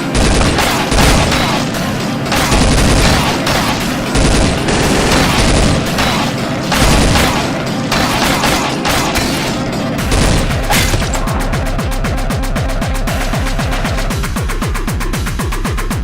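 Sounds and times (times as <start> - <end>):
rapid gunfire: 0.0 - 11.5
background music: 0.0 - 16.0.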